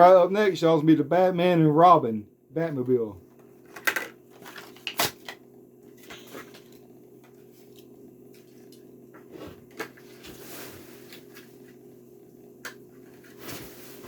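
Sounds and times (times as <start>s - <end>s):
steady low hum: 0.0s - 14.0s
plastic packaging rustling: 3.6s - 6.8s.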